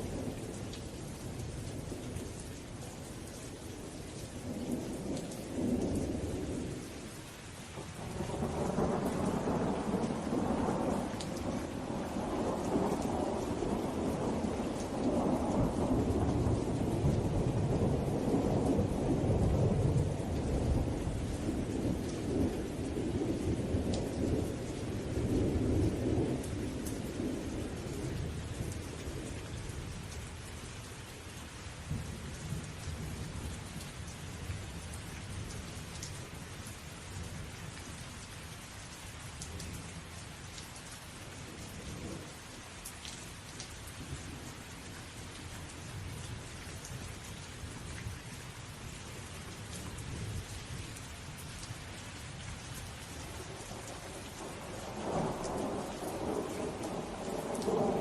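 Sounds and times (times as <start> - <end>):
steady rain: 0.0 - 58.0
rolling thunder: 53.7 - 58.0.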